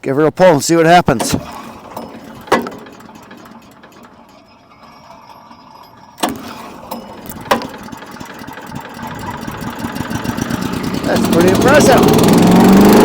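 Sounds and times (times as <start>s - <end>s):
recoil starter yanks: 0.6s - 13.0s
small engine running: 1.2s - 13.0s.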